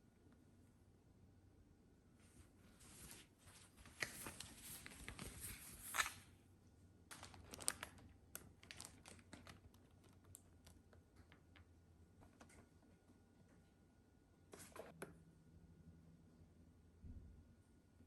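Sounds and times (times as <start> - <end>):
packaging rustling and crinkling: 3.0 - 6.3, 7.1 - 11.4.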